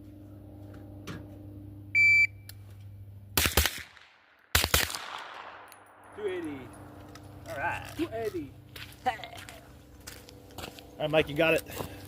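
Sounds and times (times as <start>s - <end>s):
shot timer beep: 1.9s - 2.5s
rapid gunshots echoing: 3.4s - 5.7s.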